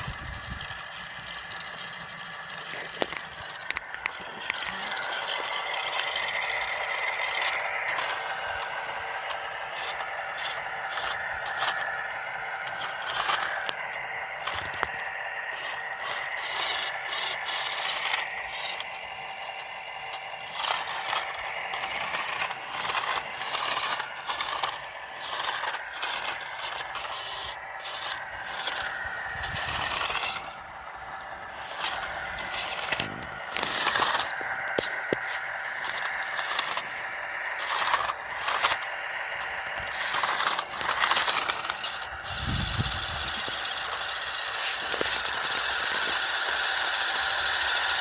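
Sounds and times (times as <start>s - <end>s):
small electric motor whining: 0.0s - 48.0s
tyres scraping on rough ground: 0.0s - 48.0s.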